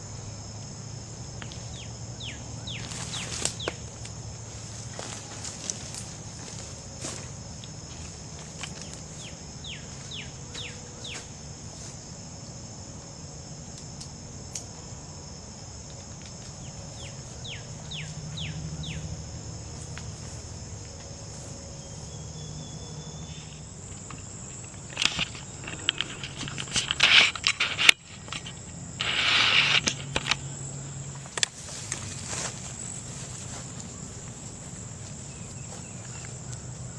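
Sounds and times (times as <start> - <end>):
crickets droning: 0.0 - 36.9
rustling and crunching steps: 2.7 - 12.1, 19.5 - 22.2, 23.6 - 30.4, 31.1 - 36.9.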